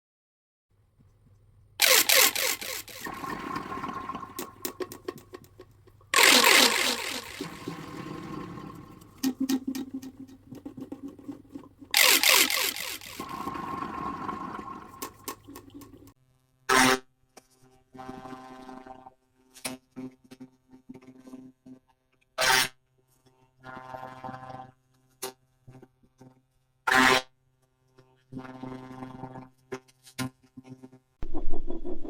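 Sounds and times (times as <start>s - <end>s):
plastic pop tubes crackling: 1.8s - 3.4s, 4.4s - 7.6s, 9.1s - 13.3s.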